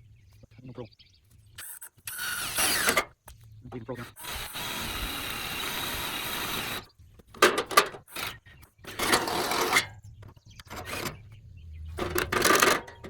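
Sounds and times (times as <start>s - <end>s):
electric drill drilling metal: 1.6s - 3.1s, 4.0s - 6.9s, 7.5s - 9.9s.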